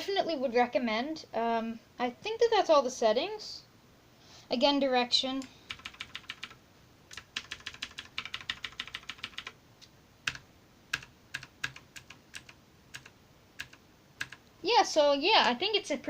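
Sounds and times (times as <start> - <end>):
mechanical keyboard keys clicking: 5.7 - 9.5, 10.3 - 14.4.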